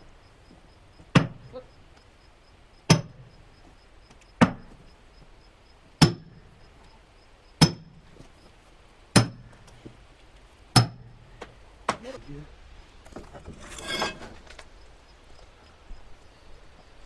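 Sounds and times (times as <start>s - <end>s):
maul striking steel wedge: 10.8s - 11.0s.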